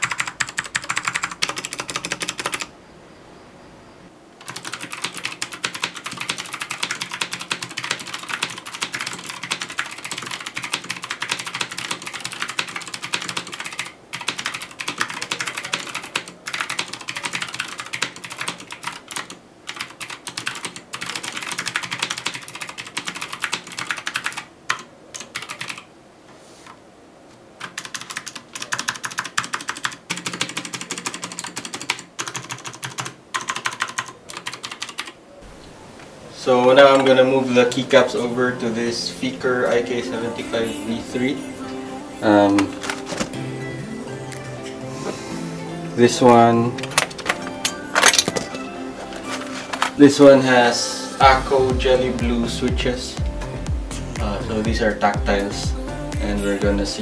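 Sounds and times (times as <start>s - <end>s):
mechanical keyboard typing: 0.0s - 2.7s, 4.4s - 25.9s, 27.6s - 35.2s.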